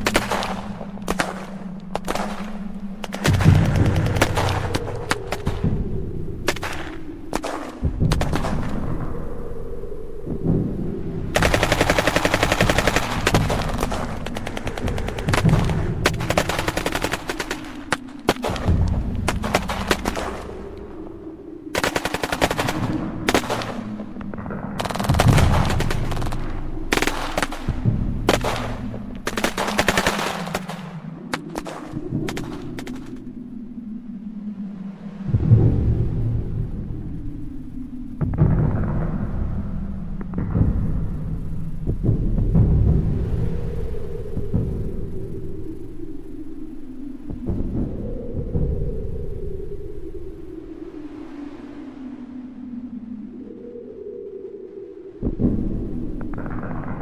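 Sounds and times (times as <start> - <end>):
continuous low rumble: 0.0 - 57.0.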